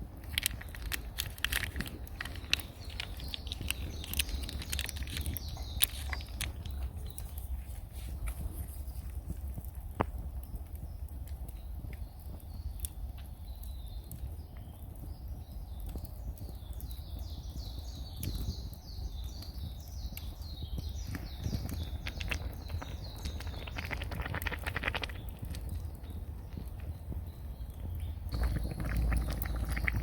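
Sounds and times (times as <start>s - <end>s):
bird chirping: 0.5s - 7.8s, 13.4s - 30.0s.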